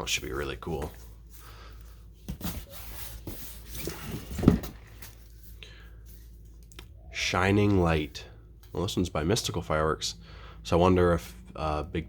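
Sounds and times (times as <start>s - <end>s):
cardboard and paper rustling: 0.0s - 6.5s.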